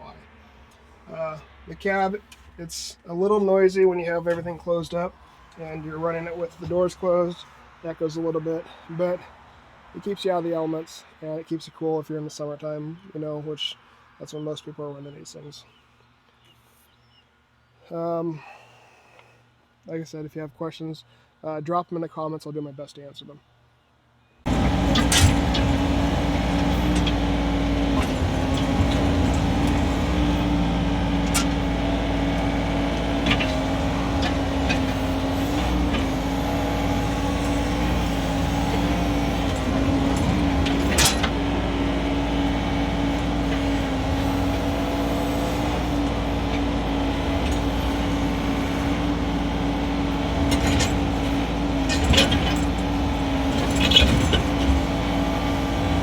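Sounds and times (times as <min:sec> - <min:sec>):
diesel excavator engine running: 0:24.4 - 0:56.0.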